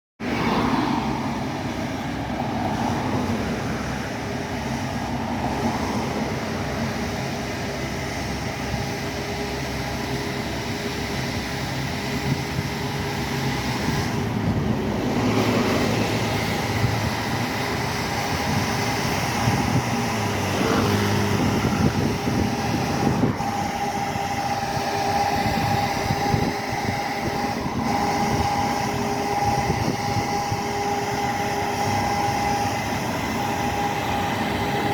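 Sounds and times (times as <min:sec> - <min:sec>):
bus diesel engine rumble: 0:00.2 - 0:34.9
loud steady whine: 0:00.2 - 0:34.9.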